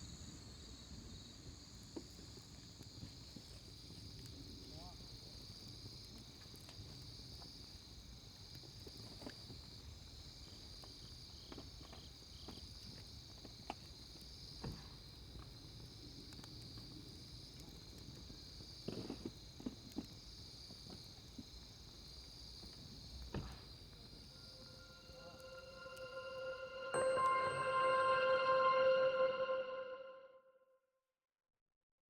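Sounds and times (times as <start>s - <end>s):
insects chirring: 18.2s - 27.6s.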